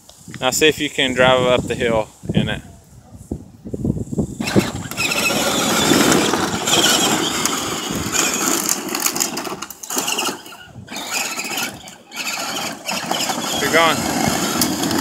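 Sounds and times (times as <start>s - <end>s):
tires working over ground: 4.2s - 15.0s
toy car motor whirring: 4.3s - 15.0s.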